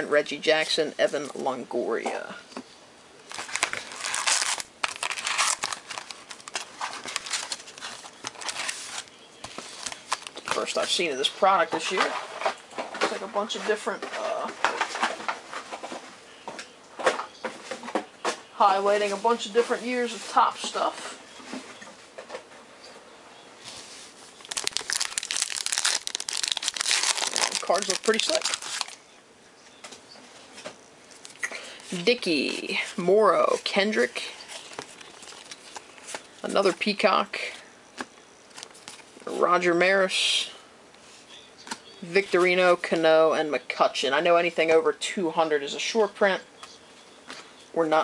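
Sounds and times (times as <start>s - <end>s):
card pack wrappers crinkling: 3.3s - 10.9s, 24.4s - 29.0s, 34.5s - 36.7s
faint handling noise: 3.3s - 11.1s, 23.6s - 29.0s, 29.6s - 39.3s.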